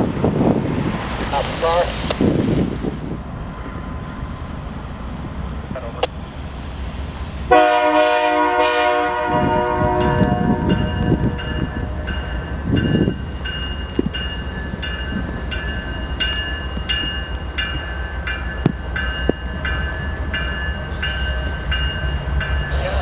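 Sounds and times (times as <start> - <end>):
diesel train rumbling: 0.0 - 23.0
railroad warning bell ringing: 7.5 - 23.0.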